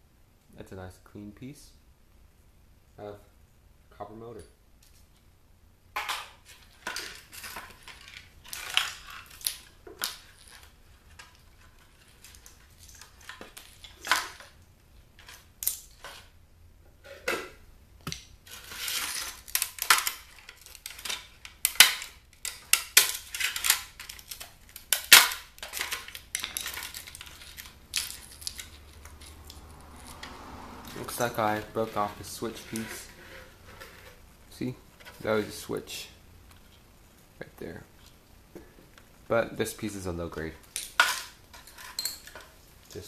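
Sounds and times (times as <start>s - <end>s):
plastic and metal parts clattering: 6.0s - 14.6s, 18.1s - 30.2s, 40.7s - 43.0s
short scrapes: 29.0s - 34.3s.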